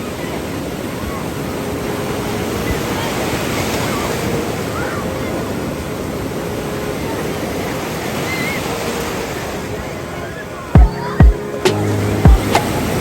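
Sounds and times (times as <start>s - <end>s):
ocean waves breaking: 0.0s - 13.0s.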